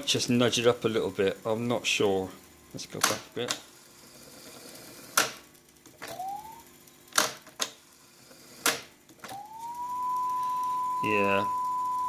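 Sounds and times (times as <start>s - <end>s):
test tone rising in pitch: 6.1s - 6.7s, 9.3s - 12.0s.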